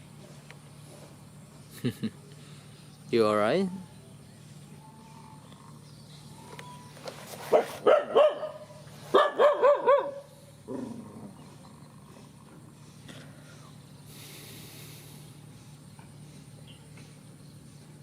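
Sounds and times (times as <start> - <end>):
dog barking: 7.5 - 10.3.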